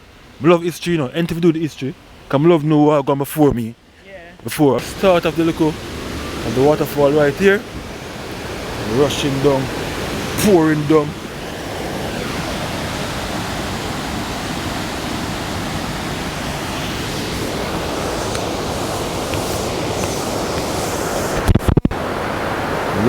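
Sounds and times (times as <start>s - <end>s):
waterfall roaring: 3.6s - 23.0s.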